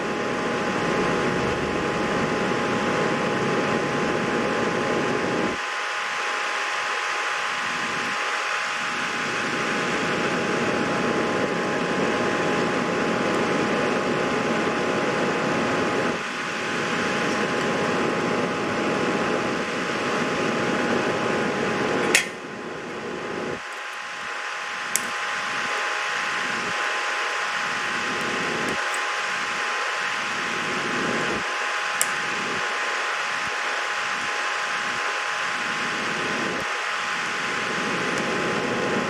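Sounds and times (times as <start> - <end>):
fan noise with faint whine: 0.0 - 39.0
sharp click: 22.1 - 22.4.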